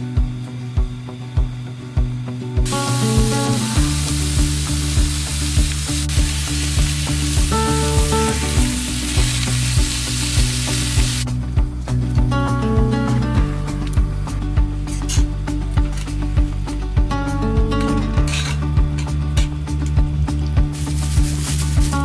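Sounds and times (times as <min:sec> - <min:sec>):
background music with steady beat: 0:00.0 - 0:22.0
food sizzling in a pan: 0:02.6 - 0:11.3, 0:20.8 - 0:22.0.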